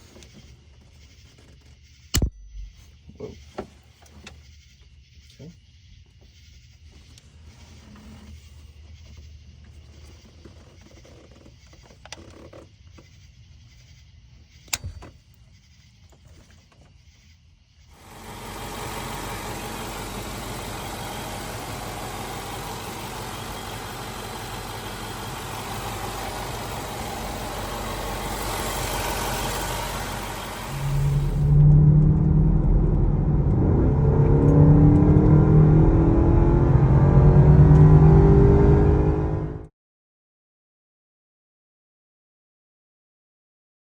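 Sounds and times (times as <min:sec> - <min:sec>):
car engine idling: 0:17.9 - 0:38.0.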